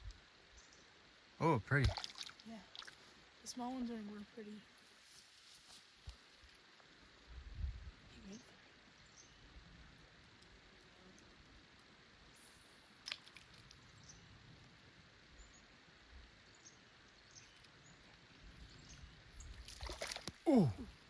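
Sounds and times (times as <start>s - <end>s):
river ambience: 11.9s - 21.0s
person exclaiming ooh: 20.5s - 20.9s.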